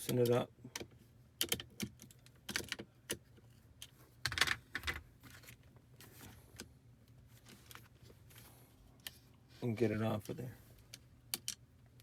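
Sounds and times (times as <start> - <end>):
plastic trim clicks and rattles: 0.0 - 3.2.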